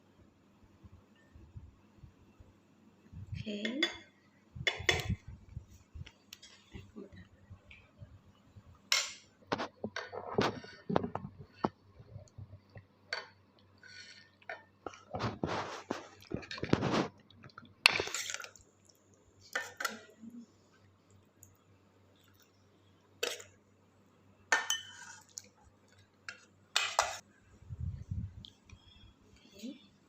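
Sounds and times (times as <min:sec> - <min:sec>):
utensils clinking on plates: 0:24.5 - 0:25.3.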